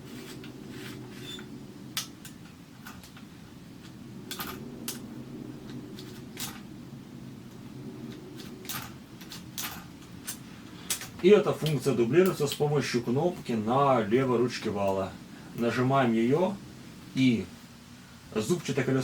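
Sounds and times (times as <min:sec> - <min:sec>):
typewriter platen clicking: 0:08.4 - 0:11.8.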